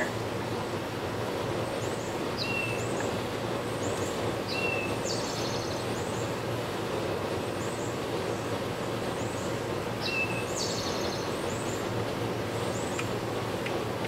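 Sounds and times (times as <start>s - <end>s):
outdoor background noise: 0.0s - 14.0s
small birds chirping: 1.6s - 6.4s, 7.4s - 13.2s.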